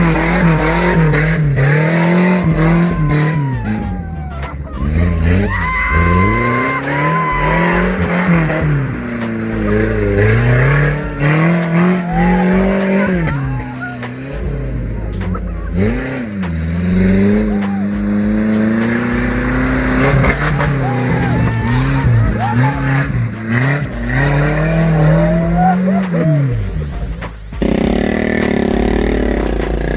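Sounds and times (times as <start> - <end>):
off-road vehicle engine revving: 0.0 - 29.9.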